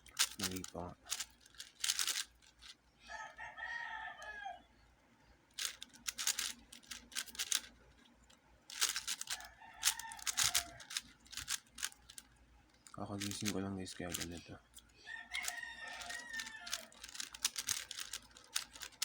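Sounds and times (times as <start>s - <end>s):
plastic puzzle cube clicking: 0.0s - 2.7s, 5.5s - 7.7s, 8.7s - 12.3s, 13.2s - 19.0s
rooster crowing: 3.0s - 4.7s, 9.2s - 11.0s, 15.0s - 18.1s.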